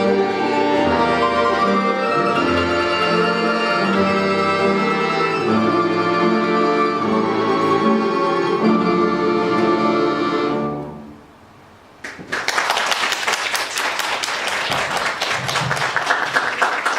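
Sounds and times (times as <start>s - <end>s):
folk instrument ensemble chord: 0.0s - 11.2s
audience applauding: 2.2s - 4.4s, 12.0s - 16.9s.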